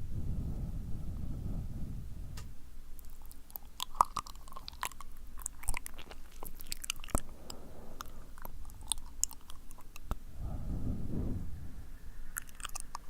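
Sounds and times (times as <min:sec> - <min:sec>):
tongue and lip clicks and smacks: 0:03.0 - 0:10.2, 0:12.3 - 0:13.0.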